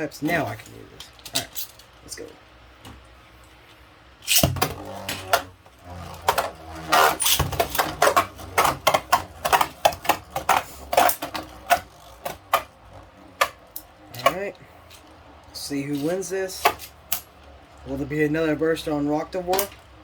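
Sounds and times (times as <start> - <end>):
spinning tops whirring: 4.2 - 14.0.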